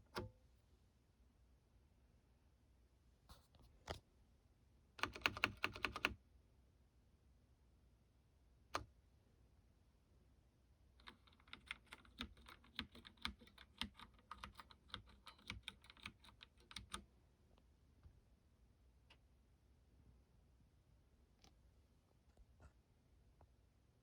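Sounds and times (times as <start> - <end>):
mechanical keyboard key clicks: 11.0 - 17.0.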